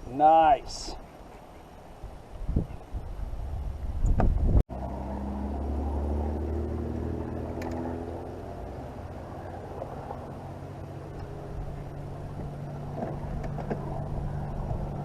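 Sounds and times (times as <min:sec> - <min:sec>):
boat motor running: 0:04.7 - 0:15.0.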